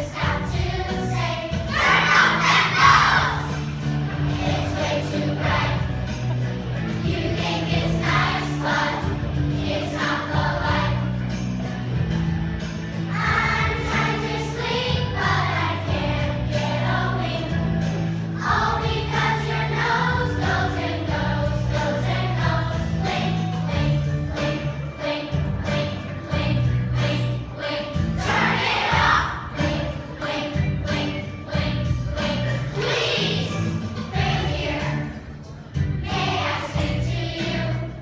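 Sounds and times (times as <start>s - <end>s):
children's choir singing: 0.0s - 12.4s, 13.0s - 38.0s
children's choir singing a winter song: 0.0s - 38.0s.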